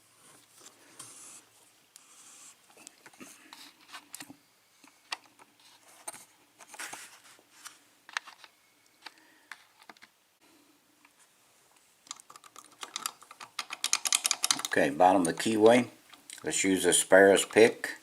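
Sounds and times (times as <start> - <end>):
lock clicks and scrapes: 12.1 - 15.5.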